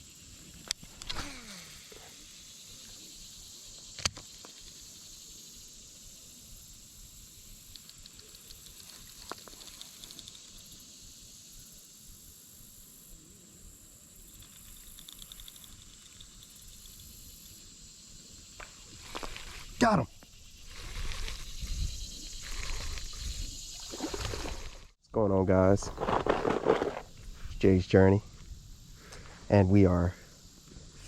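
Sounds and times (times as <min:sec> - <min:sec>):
high hiss: 0:00.0 - 0:24.7
insect chirps: 0:00.0 - 0:31.0.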